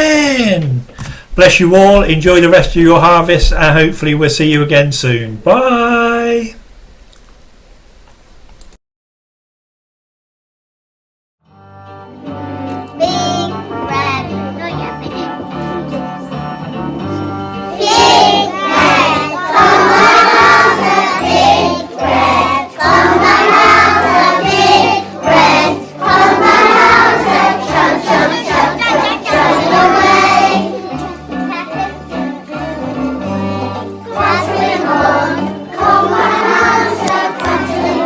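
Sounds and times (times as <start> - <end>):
instrumental accompaniment: 11.5 - 38.0
group of voices singing: 15.9 - 38.0.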